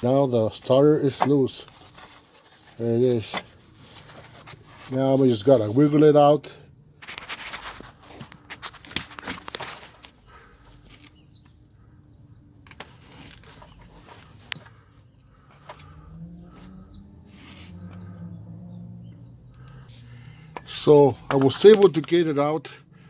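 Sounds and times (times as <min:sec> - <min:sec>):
small bird chirping: 0:10.1 - 0:21.9
low hum: 0:14.6 - 0:21.3.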